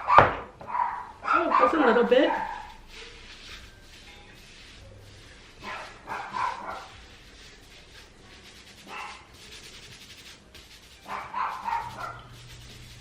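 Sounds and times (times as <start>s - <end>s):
dogs barking: 0.0s - 2.7s, 5.6s - 7.0s, 8.9s - 9.2s, 11.0s - 12.4s.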